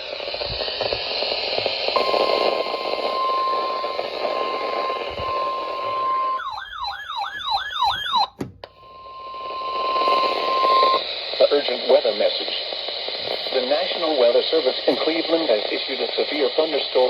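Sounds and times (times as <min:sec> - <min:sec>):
radio static: 0:00.0 - 0:06.5, 0:08.7 - 0:17.0
steady high beep: 0:02.0 - 0:06.6, 0:08.8 - 0:11.1
siren-like warble: 0:02.0 - 0:11.1.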